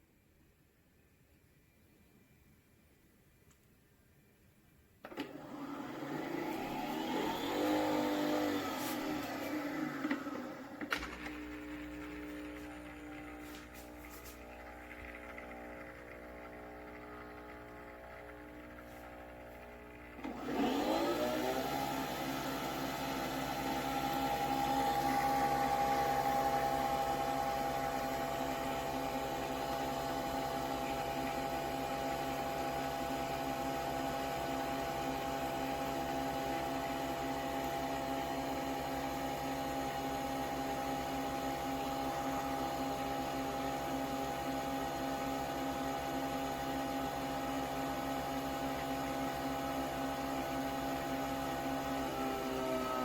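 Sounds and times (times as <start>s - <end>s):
coffee machine motor whir: 5.0s - 53.0s.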